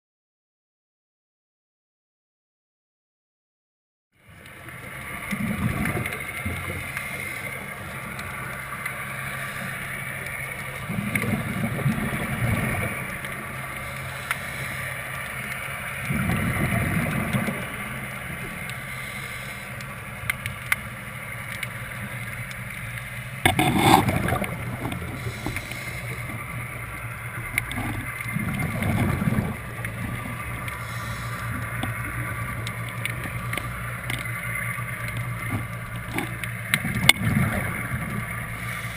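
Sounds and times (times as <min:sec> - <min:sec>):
underwater motor hum: 0:04.2 - 0:38.9
exhaled bubbles: 0:05.2 - 0:06.8, 0:10.8 - 0:13.2, 0:16.0 - 0:18.6, 0:23.4 - 0:33.4, 0:34.3 - 0:38.7
diver breathing on regulator: 0:06.7 - 0:07.8, 0:13.9 - 0:15.2, 0:18.5 - 0:20.2, 0:23.5 - 0:26.7, 0:30.4 - 0:32.5, 0:38.4 - 0:38.9.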